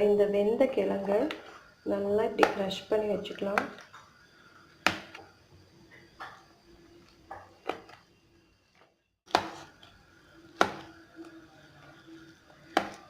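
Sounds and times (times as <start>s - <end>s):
utensil knocking crushing cassava: 10.5s - 11.0s, 12.6s - 13.0s.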